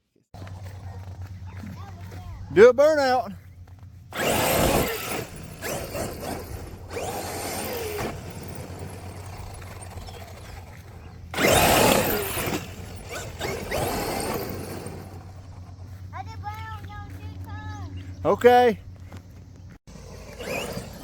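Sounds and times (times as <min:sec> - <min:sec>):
tyres spinning in dirt: 0:00.4 - 0:16.0, 0:19.5 - 0:21.0
electric toy truck drivetrain whining: 0:04.1 - 0:16.0, 0:19.6 - 0:21.0.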